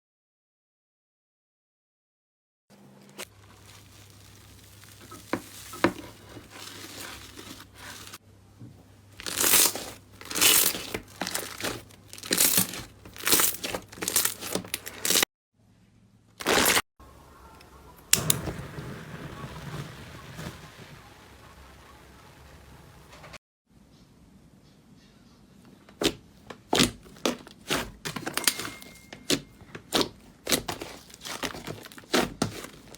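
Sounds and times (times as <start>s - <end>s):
slime squishing by hand: 3.1s - 8.2s, 9.2s - 15.2s, 26.0s - 32.9s.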